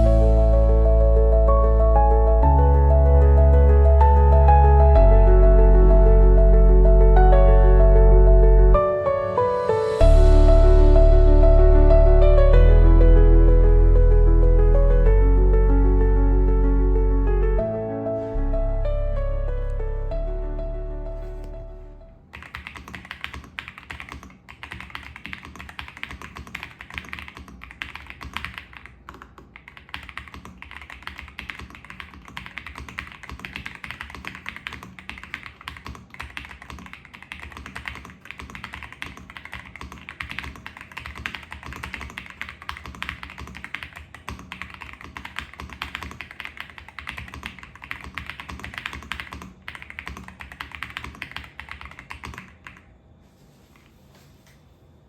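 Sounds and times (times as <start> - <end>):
mechanical keyboard typing: 22.3 - 52.9.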